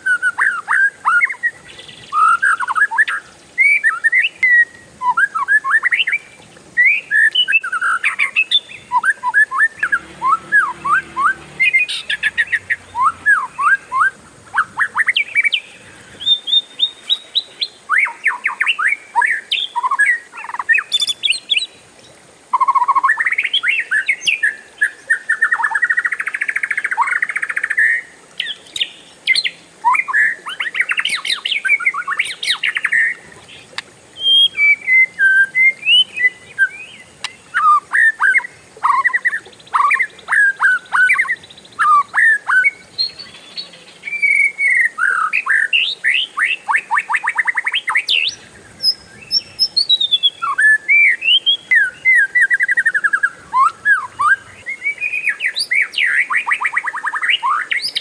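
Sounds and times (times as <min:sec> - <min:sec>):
magpie-robin singing: 0:34.2 - 0:58.0.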